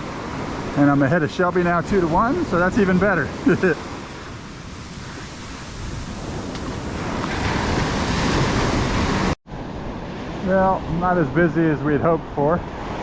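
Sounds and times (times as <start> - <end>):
ocean surf on beach: 0.0 - 11.0
wind buffeting microphone: 2.0 - 10.4.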